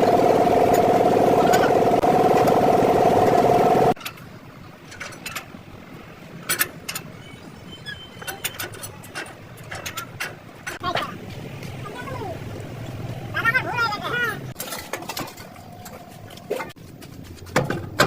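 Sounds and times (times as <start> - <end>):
motor-driven machine pulsing: 0.0 - 4.0
sharp metallic clicks and knocks: 3.3 - 5.6, 6.4 - 7.2, 8.2 - 10.9.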